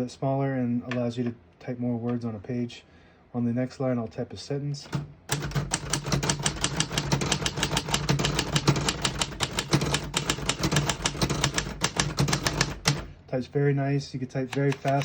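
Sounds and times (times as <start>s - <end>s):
typewriter typing: 4.9s - 13.1s, 14.5s - 15.0s.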